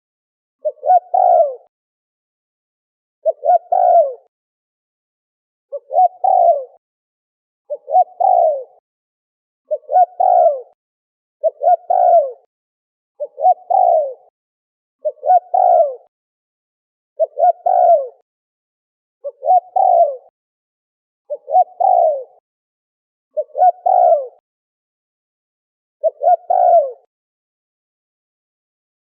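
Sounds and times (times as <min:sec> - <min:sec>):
dove cooing: 0:00.6 - 0:01.7, 0:03.2 - 0:04.3, 0:05.7 - 0:06.8, 0:07.7 - 0:08.8, 0:09.7 - 0:10.8, 0:11.4 - 0:12.5, 0:13.2 - 0:14.3, 0:15.0 - 0:16.1, 0:17.2 - 0:18.2, 0:19.2 - 0:20.3, 0:21.3 - 0:22.4, 0:23.4 - 0:24.4, 0:26.0 - 0:27.1.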